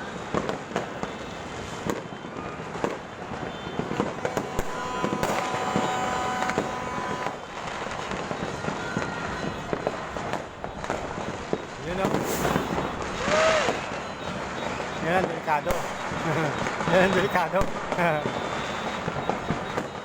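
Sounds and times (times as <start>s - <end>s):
firecrackers crackling: 0.0s - 20.0s
fireworks bangs: 0.0s - 20.0s
steady held tone: 4.5s - 8.0s.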